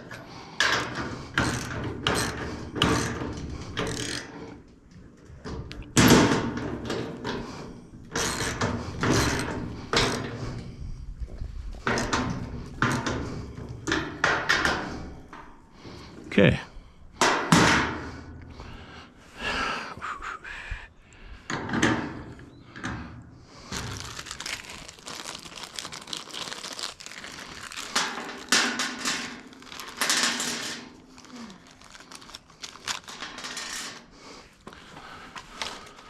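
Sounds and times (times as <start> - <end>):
parts and tools knocking: 0.6 - 4.6, 5.6 - 10.4, 11.8 - 15.6
rustling and crinkling: 23.6 - 36.0.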